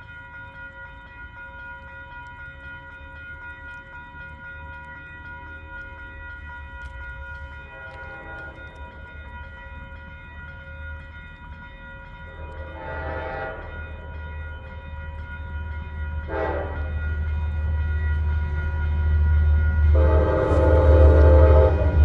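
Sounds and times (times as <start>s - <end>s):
diesel train rumbling: 7.0s - 22.0s
train horn blasts: 7.7s - 8.8s, 12.4s - 14.0s, 16.2s - 17.2s, 19.8s - 22.0s.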